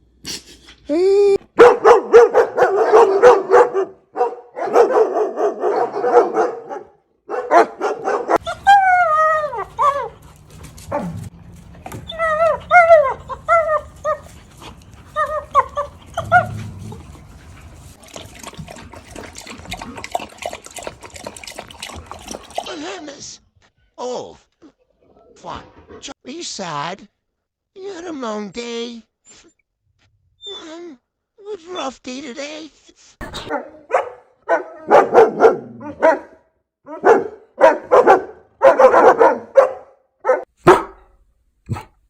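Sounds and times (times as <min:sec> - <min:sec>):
dog barking rapidly: 0:01.5 - 0:11.3, 0:11.9 - 0:14.4, 0:15.1 - 0:17.1, 0:33.5 - 0:41.0
dog whining: 0:08.3 - 0:18.0, 0:30.4 - 0:30.9.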